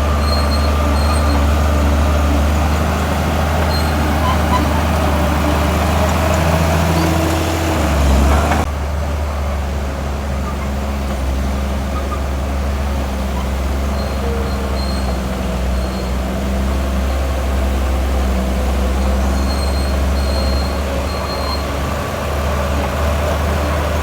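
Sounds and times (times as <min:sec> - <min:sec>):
heavy diesel engine rumbling: 0:00.0 - 0:24.0.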